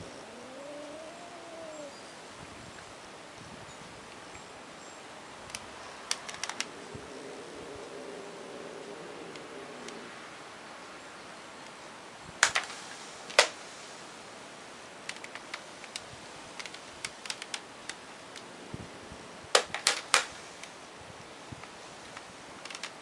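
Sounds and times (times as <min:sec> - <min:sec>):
light ticks: 0:05.4 - 0:06.7, 0:09.3 - 0:10.0, 0:15.1 - 0:18.5.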